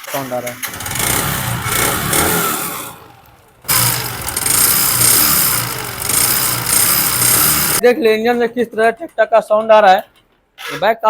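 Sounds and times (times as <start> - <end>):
motorcycle engine revving with knock: 0.5 - 7.8.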